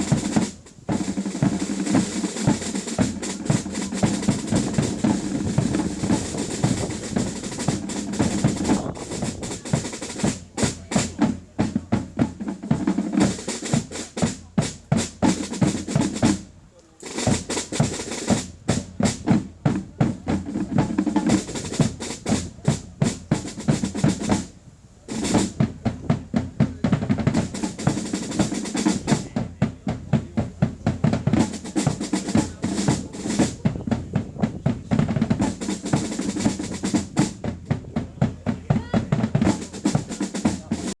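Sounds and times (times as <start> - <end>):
marching bass drums: 0.0 - 41.0
marching snare drums: 0.0 - 41.0.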